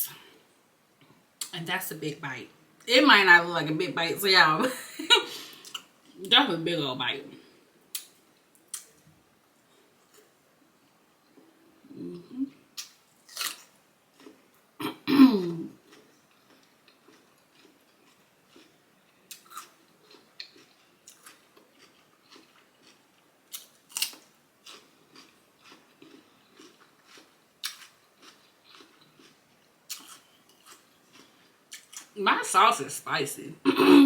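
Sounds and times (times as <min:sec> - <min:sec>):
chewing with crisp crunches: 0:12.5 - 0:14.7, 0:15.8 - 0:32.2.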